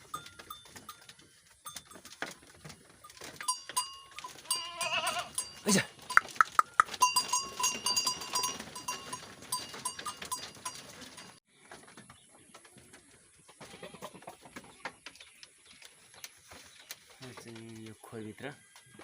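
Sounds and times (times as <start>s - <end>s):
goats shuffling: 0.0s - 19.0s
small bell clinking: 3.0s - 11.4s.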